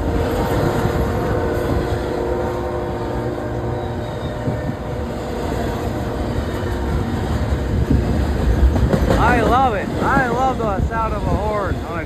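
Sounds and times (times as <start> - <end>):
distant locomotive horn: 0.0 - 6.2
train wheels rumbling on rails: 0.0 - 12.0.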